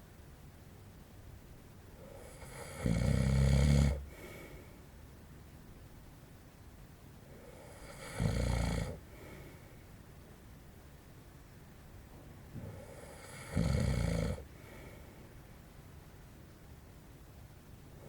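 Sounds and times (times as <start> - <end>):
man snoring: 2.1 - 4.0, 7.4 - 9.0, 12.7 - 14.4.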